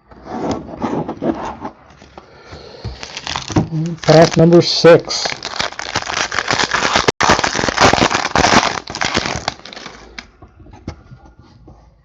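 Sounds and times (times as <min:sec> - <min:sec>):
foil wrapper crinkling and tearing: 0:02.9 - 0:10.3.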